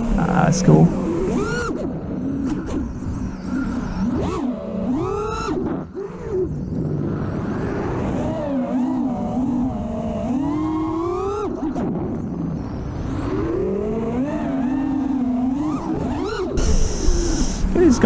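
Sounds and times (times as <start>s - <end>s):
drone motors whining: 0.0s - 6.2s, 13.4s - 18.0s.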